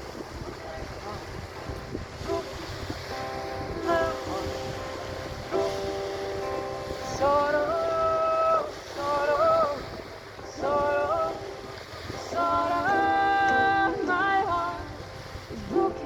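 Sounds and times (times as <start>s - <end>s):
slow song with singing voice: 1.4s - 16.0s.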